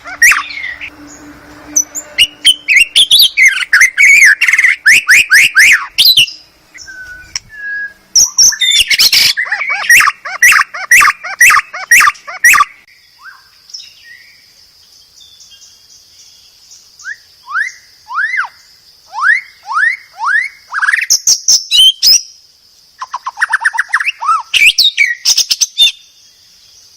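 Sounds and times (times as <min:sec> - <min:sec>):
rising bird whistles: 0:00.0 - 0:00.9, 0:01.7 - 0:13.5, 0:17.0 - 0:22.2
bird singing whistled notes: 0:00.0 - 0:22.4, 0:23.0 - 0:26.9
faint high bird trill: 0:00.0 - 0:22.4.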